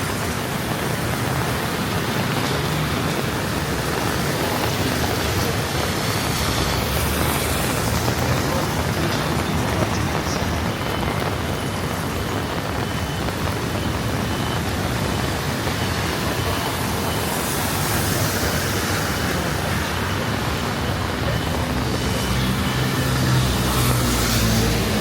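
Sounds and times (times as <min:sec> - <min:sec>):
city street traffic: 0:00.0 - 0:25.0.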